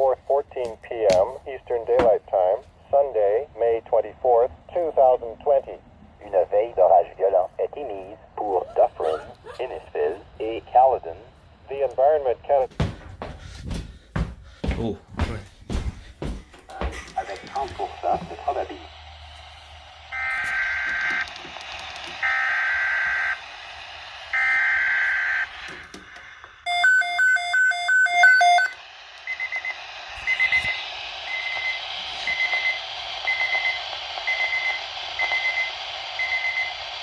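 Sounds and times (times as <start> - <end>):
buzzy digital data bursts: 17.8 - 21.3
fast multi-tone beeping alarm: 20.1 - 21.3, 22.1 - 23.4, 24.3 - 25.5, 26.6 - 36.8.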